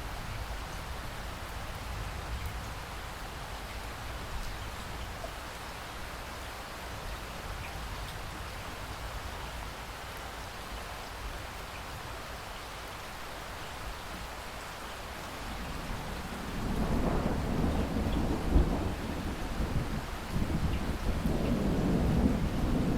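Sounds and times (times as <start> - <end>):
steady rain falling: 0.0 - 22.9
thunder rumbling: 15.5 - 22.9.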